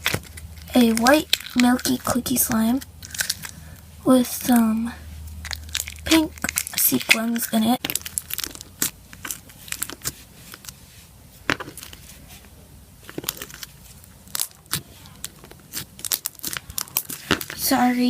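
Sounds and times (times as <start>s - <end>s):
slime clicking and crackling: 0.0s - 3.7s, 5.3s - 10.8s, 13.0s - 17.7s.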